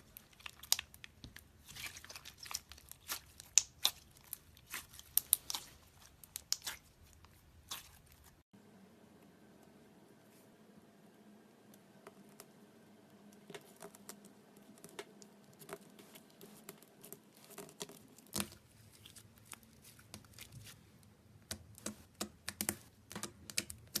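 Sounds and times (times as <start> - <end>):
slime squished by hand: 0.0 - 8.4.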